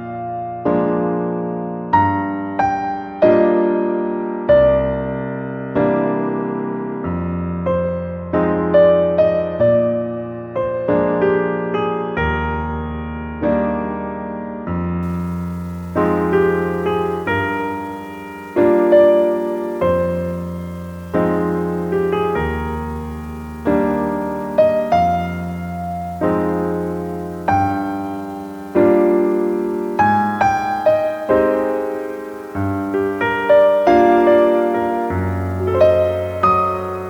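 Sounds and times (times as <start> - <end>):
slow gentle piano music: 15.0 - 37.0.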